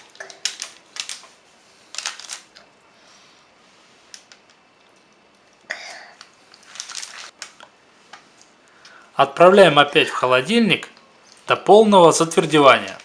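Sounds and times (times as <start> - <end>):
small hard objects clicking: 0.1 - 1.3, 1.9 - 2.6.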